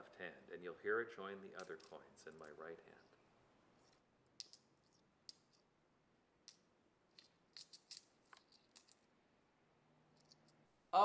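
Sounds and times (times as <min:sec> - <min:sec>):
coins clinking in a hand: 0:03.8 - 0:05.7, 0:06.4 - 0:09.1.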